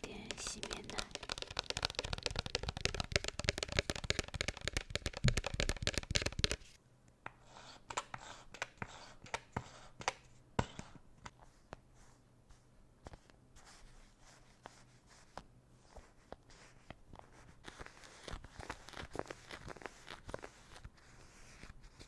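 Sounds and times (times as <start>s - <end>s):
cleanser lather crackling: 0.0s - 6.4s.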